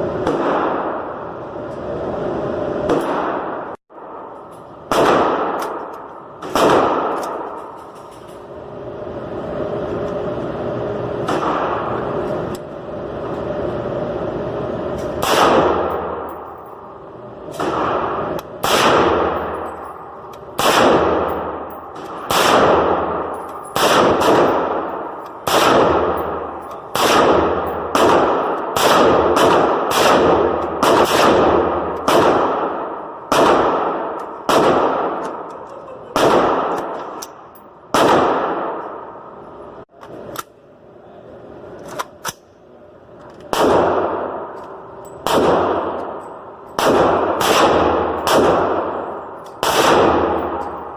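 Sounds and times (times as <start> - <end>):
steady background noise: 0.0 - 50.9
rifle shots with long echo: 0.1 - 1.5, 2.8 - 7.8, 11.2 - 12.2, 15.1 - 37.2, 37.8 - 39.4, 43.5 - 50.9.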